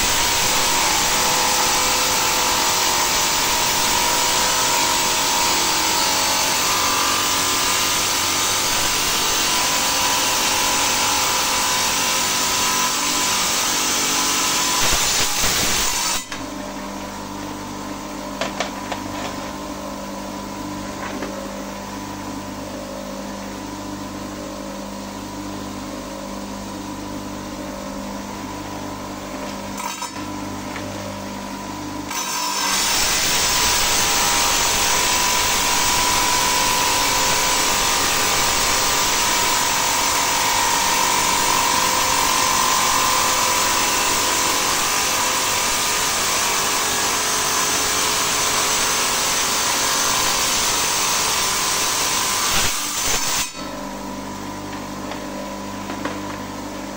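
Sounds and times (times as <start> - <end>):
saw blade grinding stone: 0.0 - 16.4, 29.8 - 30.2, 32.1 - 54.0.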